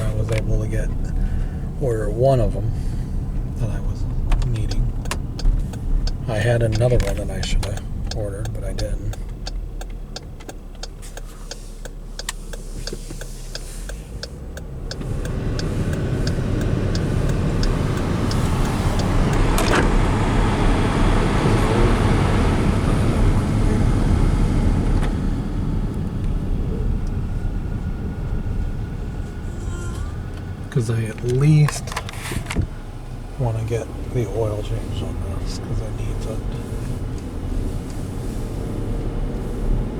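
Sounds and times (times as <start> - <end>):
car engine and tyre noise: 0.0 - 39.9
regular ticking: 0.0 - 39.9.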